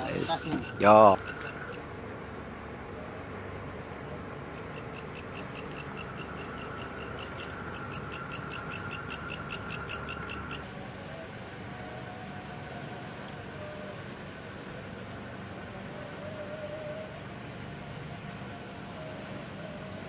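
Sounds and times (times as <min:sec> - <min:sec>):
faint high whine: 0:00.0 - 0:20.0
animal chirping clicks: 0:01.3 - 0:01.6.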